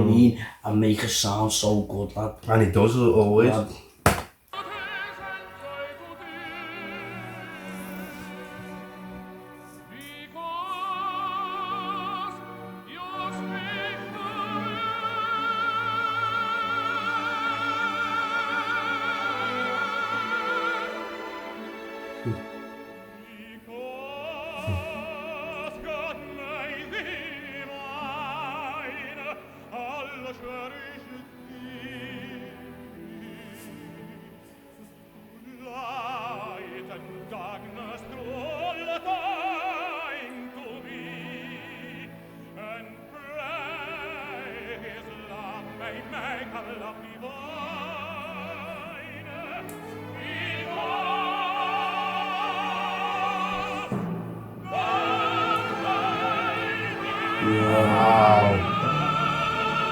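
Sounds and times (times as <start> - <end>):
operatic tenor singing: 4.5 - 34.4, 35.2 - 59.9
orchestra playing: 51.7 - 59.9.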